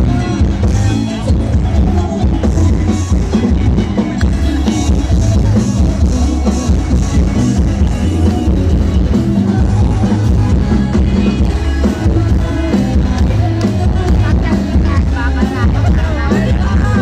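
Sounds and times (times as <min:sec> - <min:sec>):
live band music: 0:00.0 - 0:17.0.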